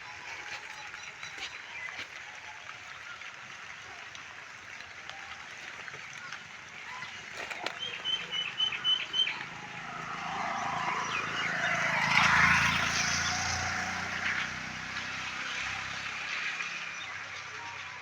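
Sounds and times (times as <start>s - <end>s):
motor vehicle passing: 6.1s - 17.8s.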